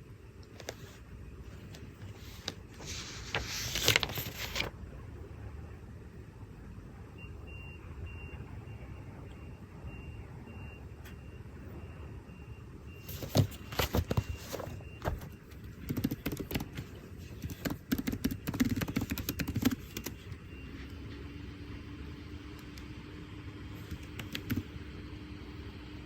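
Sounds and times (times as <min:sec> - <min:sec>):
low background hum: 0:00.0 - 0:26.0
paper rustling: 0:00.5 - 0:04.7, 0:13.0 - 0:20.4.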